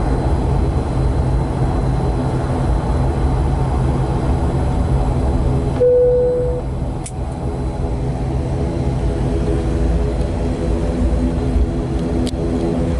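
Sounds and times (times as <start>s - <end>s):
aircraft engine rumble: 0.0s - 12.9s
short steady tone: 5.8s - 6.7s.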